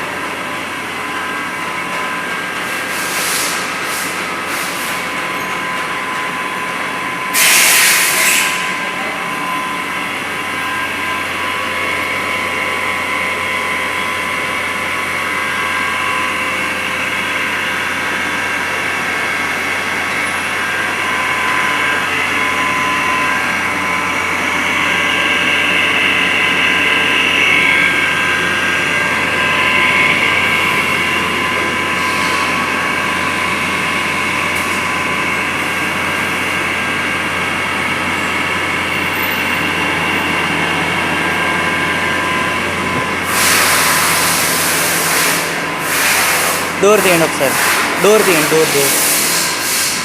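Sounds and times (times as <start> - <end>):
milling machine spindle whine: 0.0 - 50.0
loud hiss: 7.4 - 8.5.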